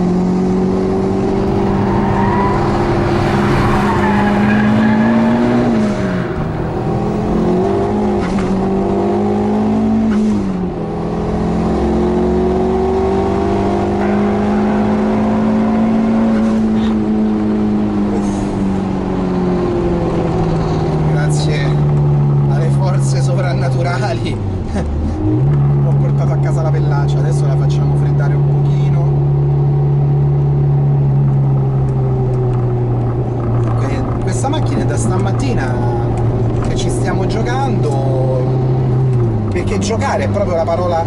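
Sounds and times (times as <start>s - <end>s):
car engine revving hard: 0.0s - 21.6s.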